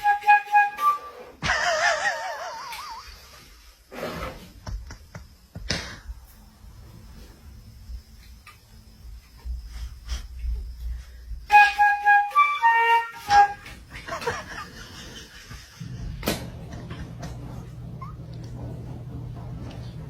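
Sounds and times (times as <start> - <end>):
flute-like wind instrument notes: 0.0 - 1.4, 11.5 - 13.8
steady low hum: 1.4 - 11.6, 13.5 - 20.0.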